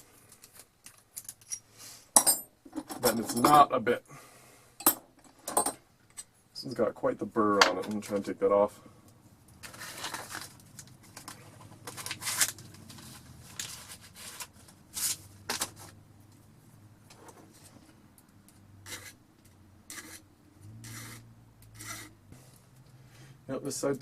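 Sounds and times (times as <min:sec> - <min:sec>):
file rasping on metal: 0:18.8 - 0:19.2, 0:19.9 - 0:21.2, 0:21.8 - 0:22.2.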